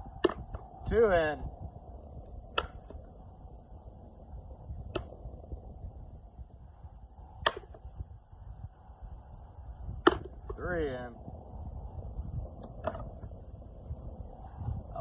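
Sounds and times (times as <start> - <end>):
wind rumble on microphone: 0.0 - 15.0.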